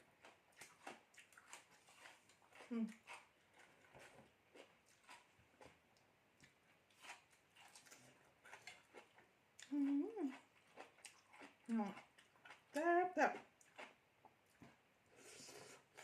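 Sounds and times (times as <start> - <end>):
person chewing food: 0.0 - 16.0
person humming: 9.7 - 10.3.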